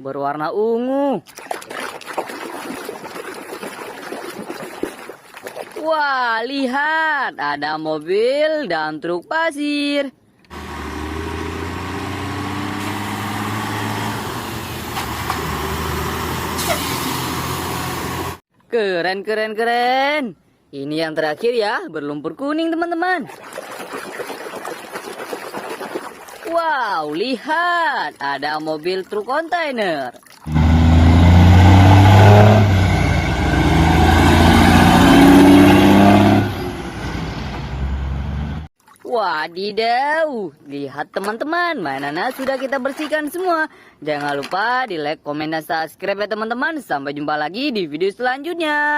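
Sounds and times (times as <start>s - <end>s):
engine humming: 10.5s - 18.4s, 30.5s - 38.7s.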